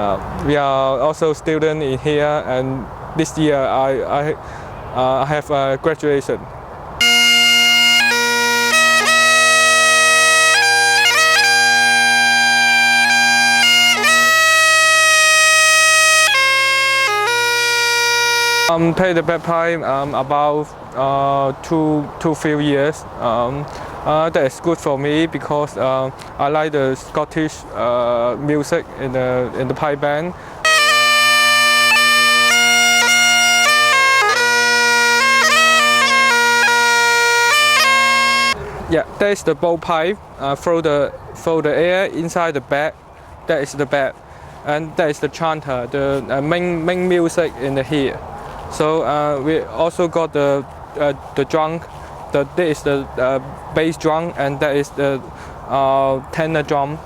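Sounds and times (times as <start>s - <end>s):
bagpipe playing a tune: 7.0s - 18.7s, 30.6s - 38.6s.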